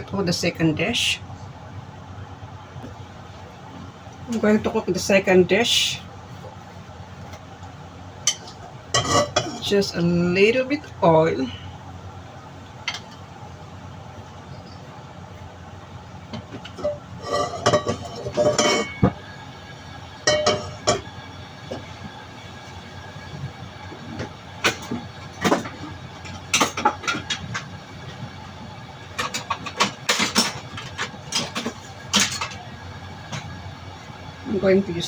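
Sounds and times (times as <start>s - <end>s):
metal cookware clinking: 8.3s - 9.7s, 16.7s - 19.1s, 20.3s - 21.1s, 29.2s - 32.7s.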